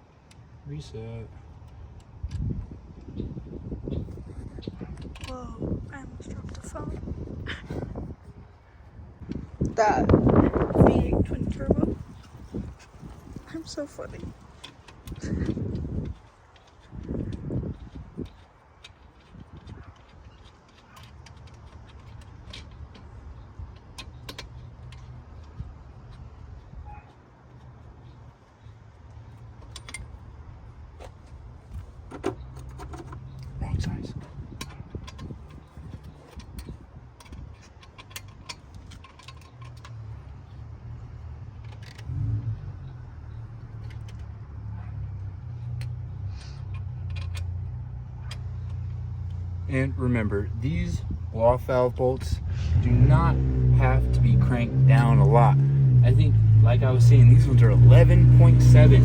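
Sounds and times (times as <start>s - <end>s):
low steady rumble: 0.0s - 18.4s, 32.8s - 59.0s
metallic clicks of hand tools: 34.6s - 40.0s.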